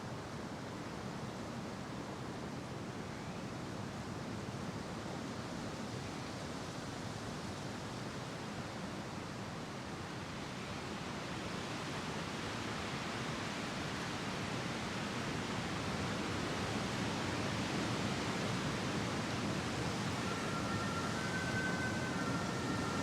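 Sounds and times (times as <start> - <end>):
wind gusting through trees: 11.3 - 23.0
faint two-tone siren: 18.5 - 23.0.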